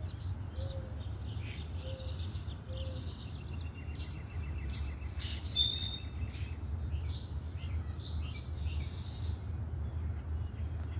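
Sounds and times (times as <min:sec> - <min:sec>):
constant low rumble: 0:00.0 - 0:10.9
small birds chirping: 0:00.0 - 0:10.9
bird whistled call: 0:05.2 - 0:06.2.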